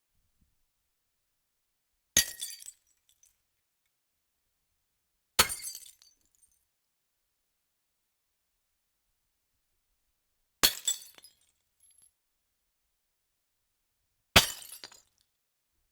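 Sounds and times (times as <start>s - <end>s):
glass smashing: 14.4s - 15.0s.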